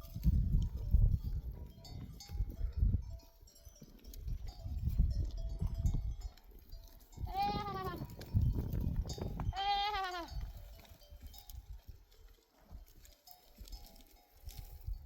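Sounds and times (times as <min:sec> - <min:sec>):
flock bells clinking: 0:00.0 - 0:07.3
sheep bleating: 0:07.2 - 0:08.1, 0:09.5 - 0:10.4.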